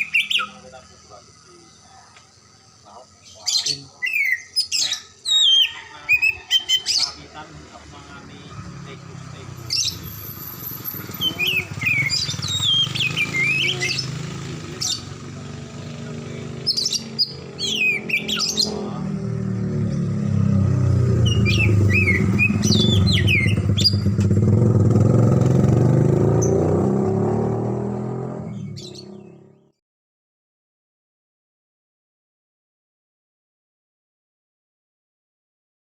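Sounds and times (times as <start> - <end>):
bird chirps and whistles: 0.0 - 0.6, 3.3 - 7.2, 9.6 - 14.2, 16.6 - 18.8, 21.2 - 24.1, 28.5 - 29.3
motorcycle engine droning: 0.0 - 4.0, 5.9 - 29.8.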